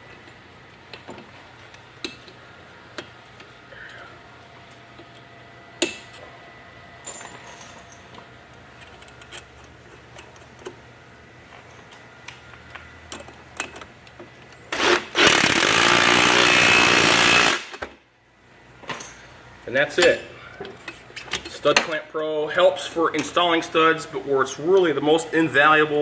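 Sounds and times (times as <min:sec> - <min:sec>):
power driver running: 0:14.5 - 0:17.9.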